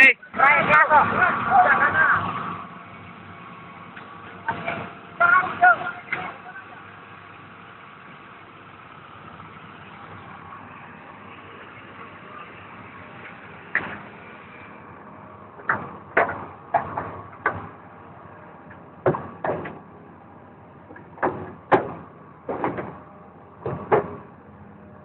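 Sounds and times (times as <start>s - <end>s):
engine running hum: 0.0s - 25.0s
irregular knocks and bangs: 15.6s - 17.8s, 18.6s - 19.9s, 20.9s - 24.3s.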